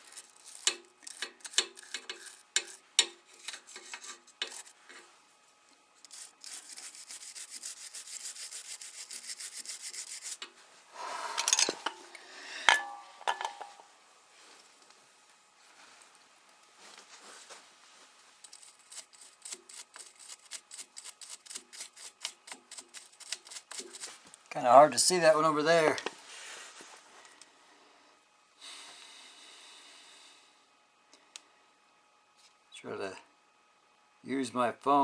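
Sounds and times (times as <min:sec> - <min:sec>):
scrubbing metal by hand: 0:00.0 - 0:04.8, 0:06.0 - 0:10.5, 0:18.5 - 0:24.2
tools knocking and clinking: 0:11.4 - 0:12.0, 0:12.7 - 0:13.8.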